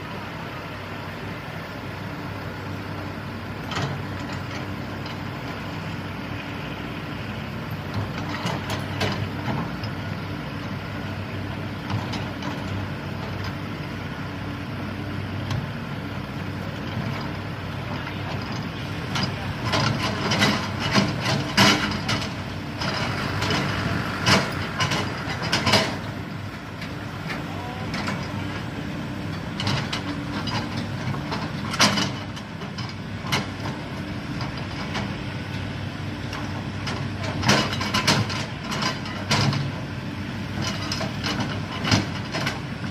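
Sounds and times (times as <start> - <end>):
excavator diesel engine running: 0.0 - 42.9
machine knocking and clatter: 7.9 - 10.0, 18.3 - 26.1, 29.3 - 35.1, 36.3 - 39.8, 40.5 - 42.9.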